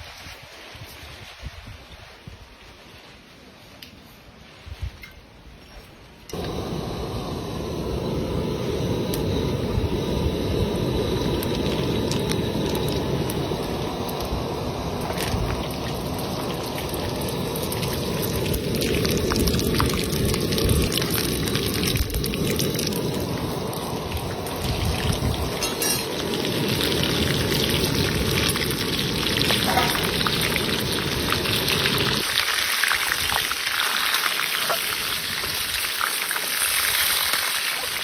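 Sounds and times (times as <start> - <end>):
water running and splashing: 14.8 - 38.0.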